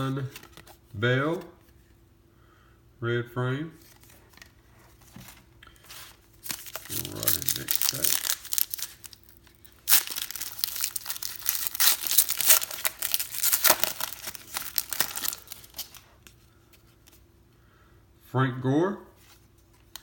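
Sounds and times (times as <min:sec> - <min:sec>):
plastic wrapper tearing and crinkling: 0:06.4 - 0:16.4.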